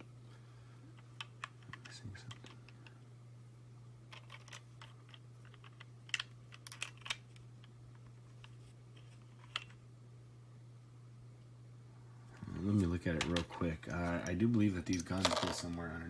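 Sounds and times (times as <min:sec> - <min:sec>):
steady low hum: 0:00.0 - 0:16.0
plastic toy parts clicking: 0:04.1 - 0:07.2.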